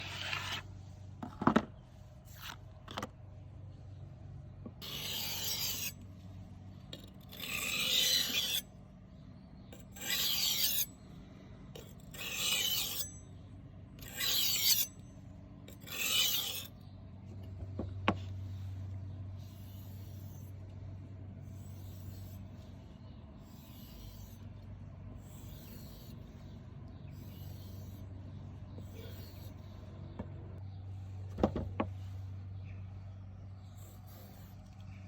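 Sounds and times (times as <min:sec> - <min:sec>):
knife rasping on a strop: 0:00.0 - 0:00.7, 0:04.8 - 0:06.0, 0:07.0 - 0:08.7, 0:09.8 - 0:10.9, 0:11.8 - 0:13.3, 0:14.0 - 0:15.0, 0:15.7 - 0:16.7, 0:19.4 - 0:20.7, 0:21.4 - 0:22.7, 0:23.4 - 0:24.6, 0:25.2 - 0:26.5, 0:27.1 - 0:29.7.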